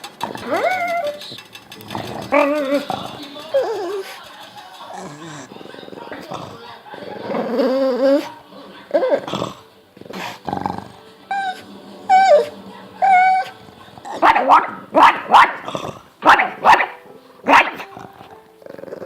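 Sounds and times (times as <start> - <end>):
dog whining: 0.2 - 4.2, 7.2 - 19.0
dog yipping and barking: 0.4 - 1.4, 11.3 - 18.0.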